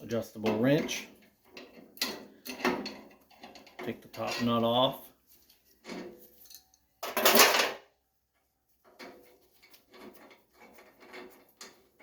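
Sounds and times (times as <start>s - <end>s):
wrench scraping clatter: 0.4s - 4.8s, 8.8s - 12.0s.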